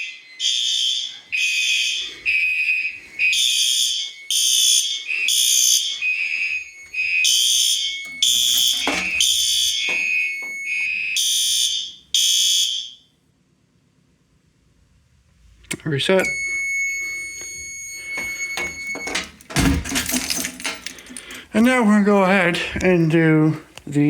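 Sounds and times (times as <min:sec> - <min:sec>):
fire alarm horns: 0:00.0 - 0:13.2, 0:16.2 - 0:19.6.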